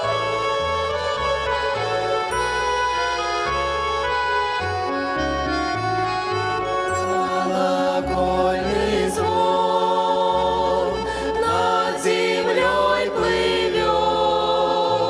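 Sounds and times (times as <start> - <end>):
sustained low bass notes: 0.0 - 15.0
vocal ensemble singing: 7.0 - 15.0.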